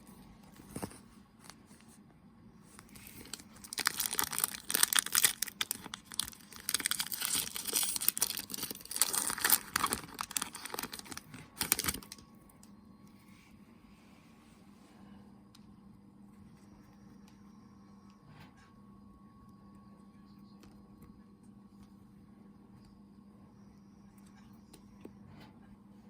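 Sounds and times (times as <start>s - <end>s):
plastic and foil tearing: 2.9s - 12.2s.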